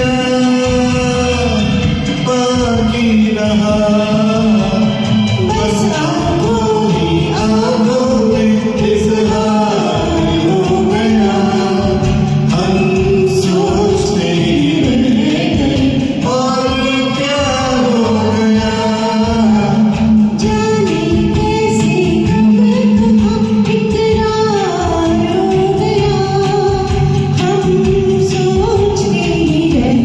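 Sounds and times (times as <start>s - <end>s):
karaoke backing track: 0.0s - 30.0s
person singing: 0.0s - 30.0s.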